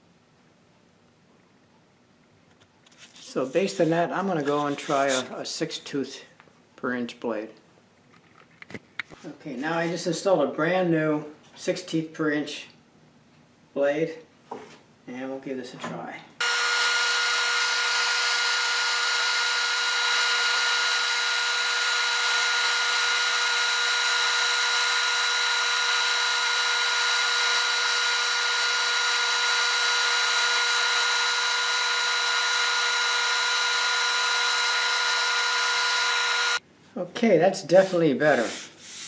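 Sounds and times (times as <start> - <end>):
band saw cutting plastic: 16.4 - 36.6
dust vacuum running: 16.4 - 36.6.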